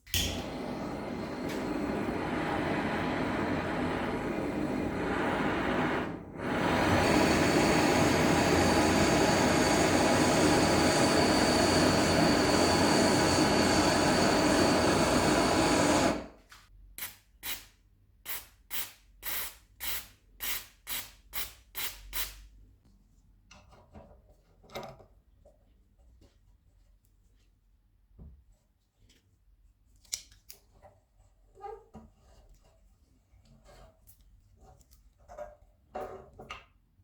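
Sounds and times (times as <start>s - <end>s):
power tool running: 0.2s - 16.3s.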